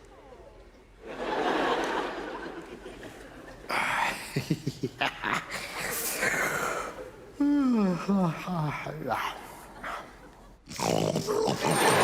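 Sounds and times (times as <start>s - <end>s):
audience laughing: 1.0s - 3.7s.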